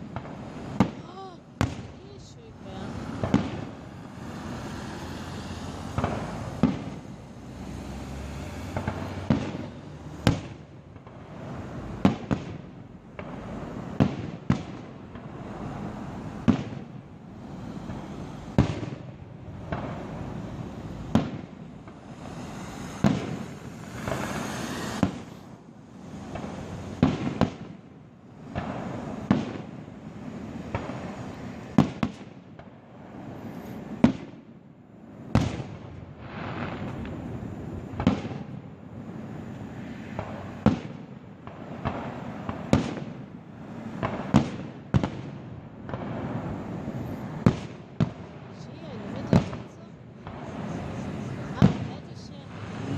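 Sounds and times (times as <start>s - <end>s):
continuous background noise: 0.0s - 52.9s
fireworks bursting bangs: 0.0s - 52.9s.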